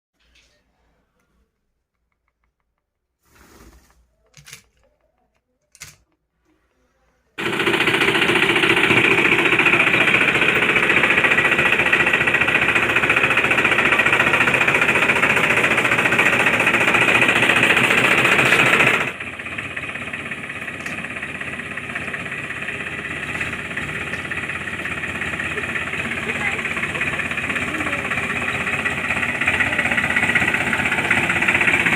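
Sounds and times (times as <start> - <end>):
small machine rattling: 7.4 - 31.9.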